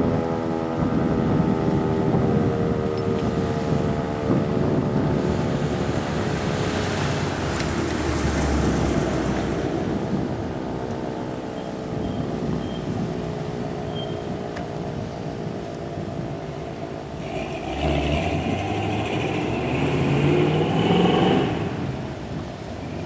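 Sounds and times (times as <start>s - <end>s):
vehicle driving by: 3.1s - 14.0s, 17.2s - 23.0s.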